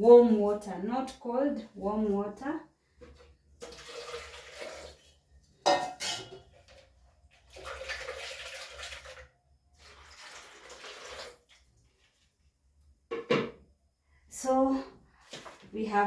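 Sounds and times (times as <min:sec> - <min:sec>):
water pouring: 0:03.1 - 0:05.5, 0:06.3 - 0:12.3.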